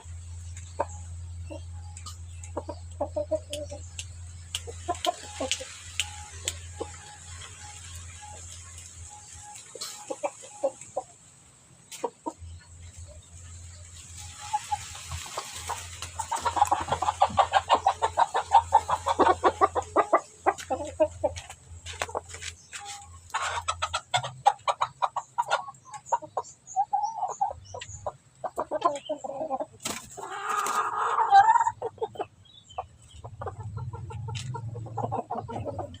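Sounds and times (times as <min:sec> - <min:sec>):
chicken clucking: 0:00.0 - 0:36.0.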